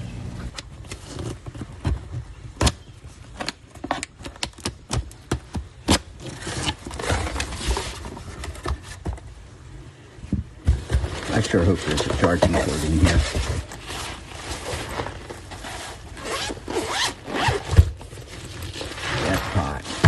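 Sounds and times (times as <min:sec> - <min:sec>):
scraping and rustling: 0:06.2 - 0:09.2, 0:10.5 - 0:20.0.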